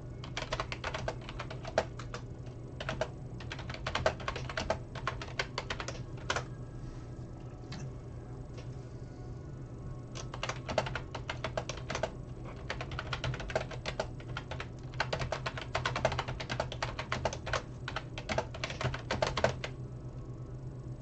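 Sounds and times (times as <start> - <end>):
low steady hum: 0.0 - 21.0
typing on a keyboard: 0.2 - 2.2, 2.8 - 6.5, 10.2 - 19.7.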